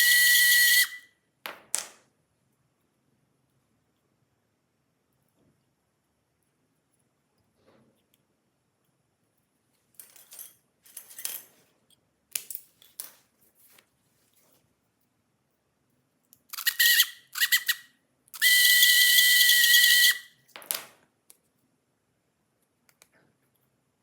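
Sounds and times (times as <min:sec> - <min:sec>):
toy motor high whine: 0:00.0 - 0:01.0, 0:16.5 - 0:20.3
light scraping handling noises: 0:12.6 - 0:15.0.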